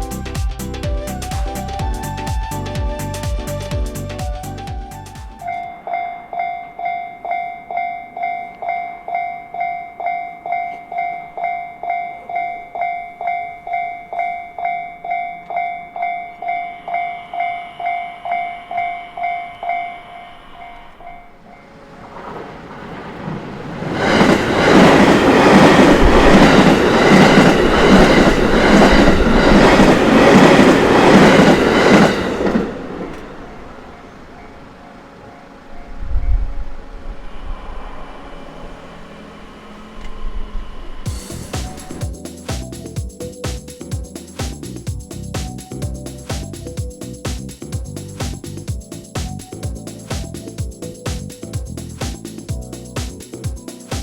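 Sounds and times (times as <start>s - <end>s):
train rumbling past: 0.0s - 54.0s
level crossing bell ringing: 5.4s - 21.7s.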